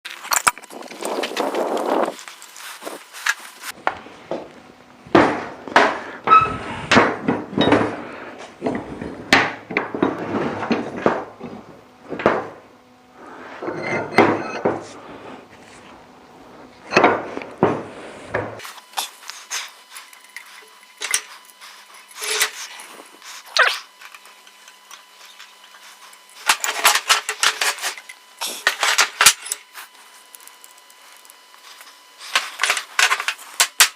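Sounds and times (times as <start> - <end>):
metal scraping: 13.2 - 16.0, 16.6 - 30.5.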